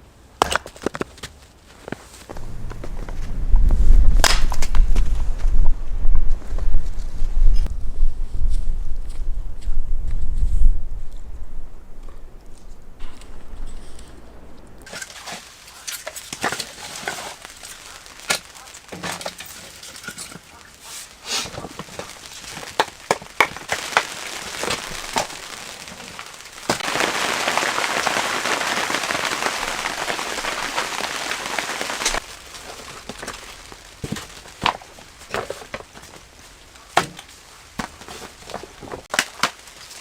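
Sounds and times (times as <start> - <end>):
campfire crackling and popping: 2.3 - 7.8, 12.0 - 40.0
loud steady hiss: 14.1 - 38.4.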